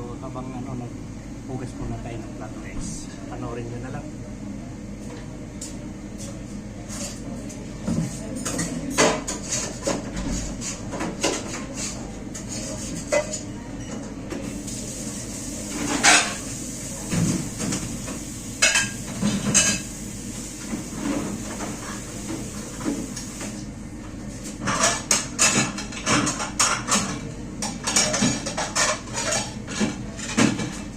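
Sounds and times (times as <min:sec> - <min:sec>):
plates and cutlery clinking: 0:07.9 - 0:14.1, 0:24.6 - 0:30.8.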